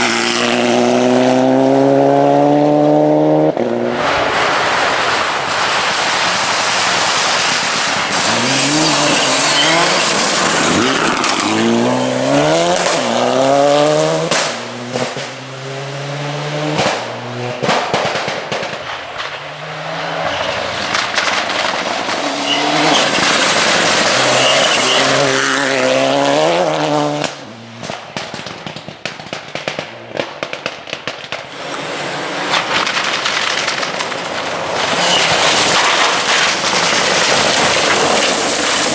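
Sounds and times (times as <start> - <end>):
rally car engine accelerating: 0.0 - 5.3, 8.0 - 27.7
anti-lag bangs and crackles: 17.6 - 25.6, 27.2 - 38.9.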